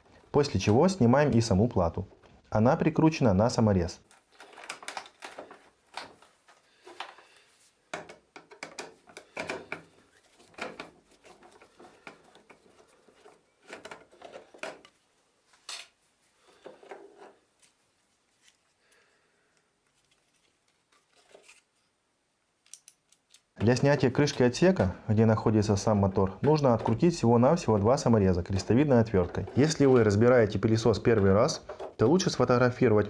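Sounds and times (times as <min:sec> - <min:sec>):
screwdriver and plastic parts clicking: 0:04.0 - 0:07.2, 0:07.9 - 0:15.0, 0:22.6 - 0:24.9.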